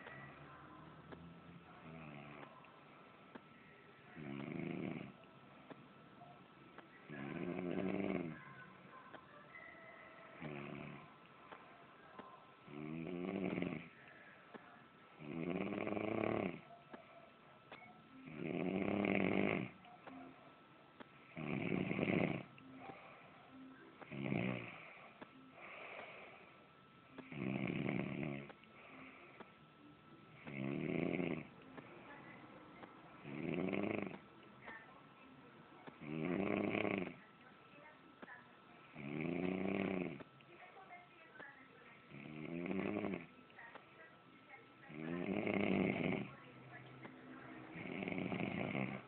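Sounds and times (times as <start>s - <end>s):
quiet breathing: 0.0s - 49.0s
man snoring loudly: 4.2s - 5.2s, 7.2s - 8.4s, 12.7s - 13.9s, 15.2s - 16.6s, 18.3s - 19.8s, 21.3s - 22.5s, 24.1s - 24.9s, 27.2s - 28.5s, 30.4s - 31.5s, 33.2s - 34.2s, 36.0s - 37.2s, 39.0s - 40.2s, 42.1s - 43.3s, 44.9s - 46.3s, 47.7s - 49.0s.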